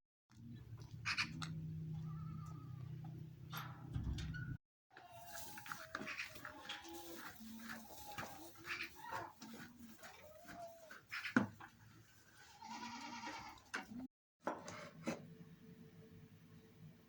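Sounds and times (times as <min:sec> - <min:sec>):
goats bleating: 0:05.0 - 0:11.4, 0:12.5 - 0:13.7.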